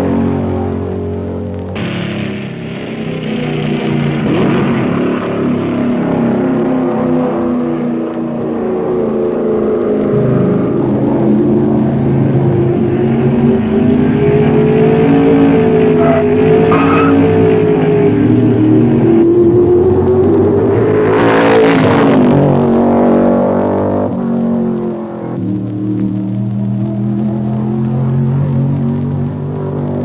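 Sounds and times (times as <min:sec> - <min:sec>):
racing car engines: 0:00.0 - 0:30.0.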